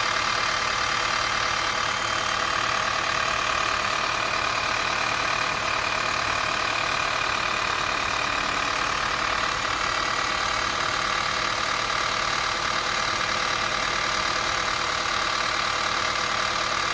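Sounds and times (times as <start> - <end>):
car engine running: 0.0 - 16.9
fast engine ticking: 0.0 - 16.9.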